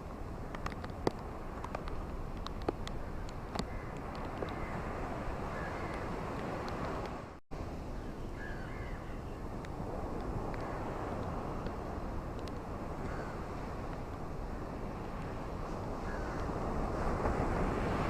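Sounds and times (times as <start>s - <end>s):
ocean surf on beach: 0.0s - 18.0s
faint bird calls: 8.0s - 9.4s.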